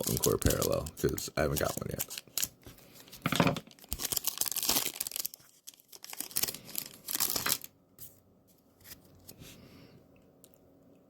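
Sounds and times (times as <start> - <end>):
plastic wrapper tearing and crinkling: 0.0 - 2.8, 3.5 - 7.7.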